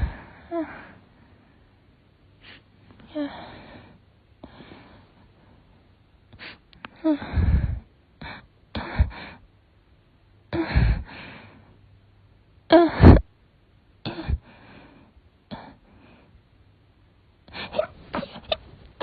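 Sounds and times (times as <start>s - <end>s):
person sneezing: 12.8s - 13.3s.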